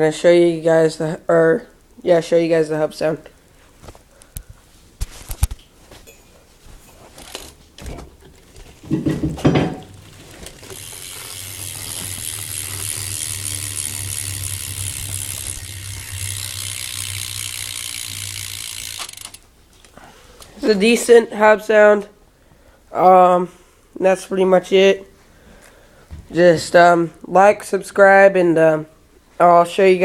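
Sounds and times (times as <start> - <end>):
knocks and clatter: 7.1 - 13.2
bicycle hub ratcheting buzz: 7.2 - 7.6, 10.0 - 19.6.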